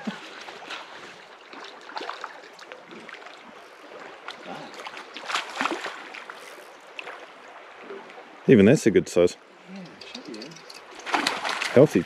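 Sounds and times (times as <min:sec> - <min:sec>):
small water splashes: 0:00.0 - 0:08.5, 0:10.7 - 0:12.0
river water running: 0:00.0 - 0:12.0.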